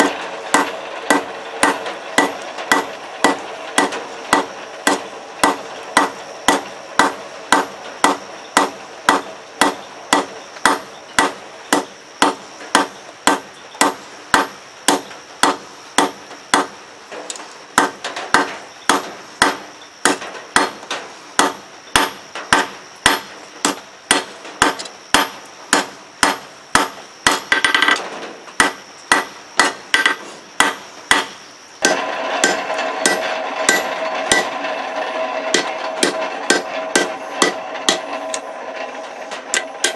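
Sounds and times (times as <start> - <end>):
hammer striking steel on anvil: 0.0 - 16.8, 17.8 - 28.0, 28.6 - 39.9
steady humming noise: 0.0 - 39.9.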